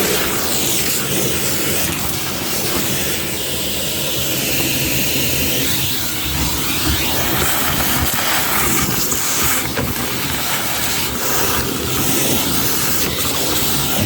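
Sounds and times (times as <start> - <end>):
wet dry vacuum hissing: 0.0 - 14.0.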